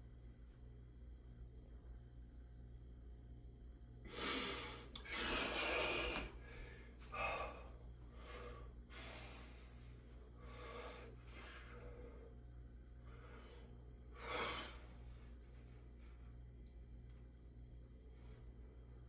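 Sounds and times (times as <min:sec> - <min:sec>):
man breathing heavily: 0:04.1 - 0:16.1.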